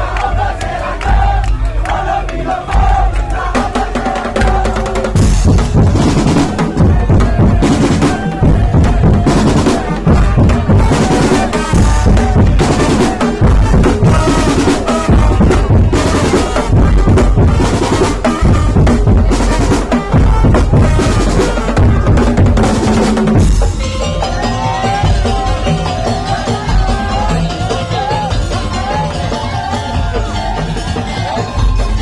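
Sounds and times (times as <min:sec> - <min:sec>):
percussion ensemble drumming: 0:00.0 - 0:32.0
knocking wooden percussion: 0:00.2 - 0:31.8.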